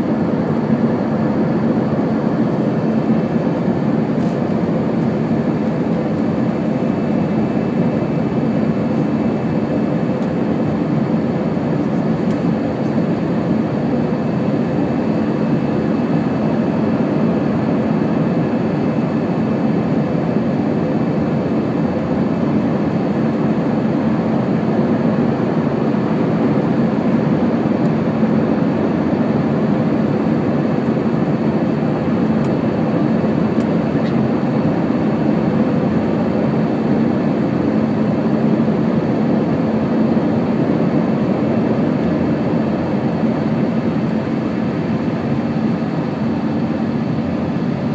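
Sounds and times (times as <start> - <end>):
jet engine cabin noise: 0.0 - 47.9.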